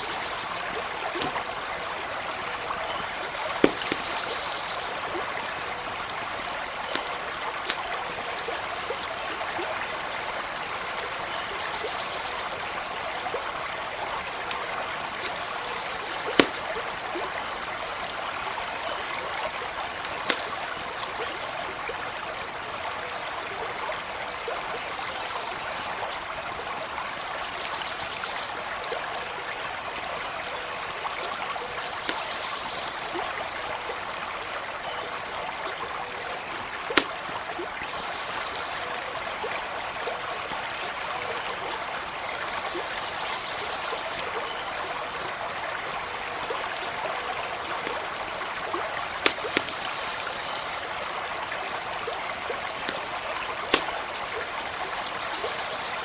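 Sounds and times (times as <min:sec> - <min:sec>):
campfire pops: 0:00.0 - 0:12.2, 0:14.2 - 0:18.2, 0:19.0 - 0:21.2, 0:31.1 - 0:33.9, 0:36.6 - 0:37.9, 0:46.3 - 0:56.0
creek running: 0:00.0 - 0:56.0.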